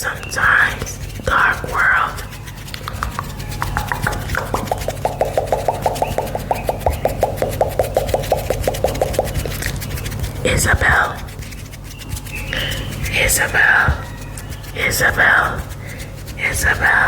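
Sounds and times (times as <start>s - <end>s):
faint scratchy rubbing: 0.0s - 17.0s
rapid tongue clicking: 0.1s - 17.0s.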